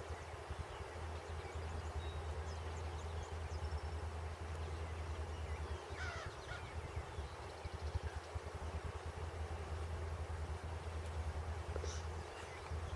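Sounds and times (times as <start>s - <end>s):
steady low rumble: 0.0s - 12.9s
small birds chirping: 10.7s - 12.9s.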